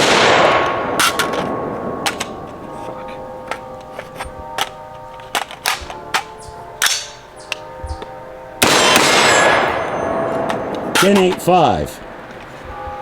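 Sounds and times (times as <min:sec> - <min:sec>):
rifle shot echoing: 0:00.0 - 0:02.6, 0:08.6 - 0:11.4
metallic rifle clicks and clacks: 0:03.5 - 0:07.6, 0:10.5 - 0:11.5.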